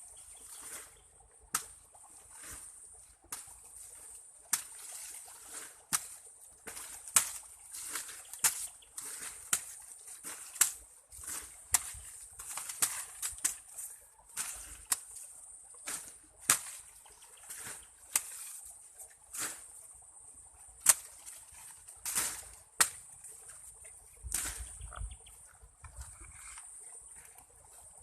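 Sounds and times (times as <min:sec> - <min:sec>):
corn ears snapping off stalks: 0:01.5 - 0:01.8, 0:04.5 - 0:15.2, 0:15.8 - 0:18.7, 0:19.3 - 0:19.7, 0:20.8 - 0:25.1.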